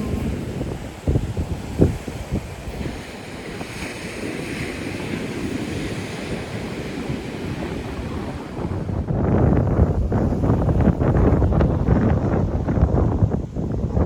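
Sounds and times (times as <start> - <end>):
surf washing onto rocky shore: 0.0 - 13.7
wind buffeting microphone: 0.0 - 14.0.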